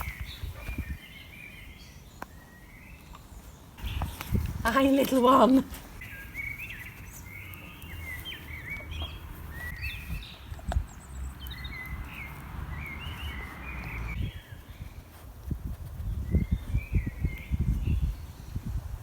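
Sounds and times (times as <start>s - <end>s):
songbird chirping and warbling: 0.0s - 15.2s, 16.0s - 18.8s.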